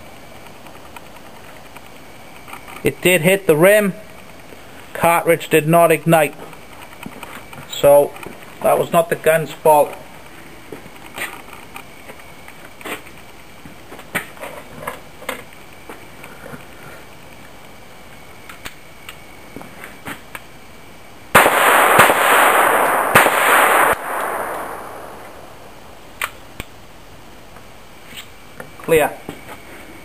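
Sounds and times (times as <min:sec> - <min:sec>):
pistol shots: 0:21.4 - 0:25.7.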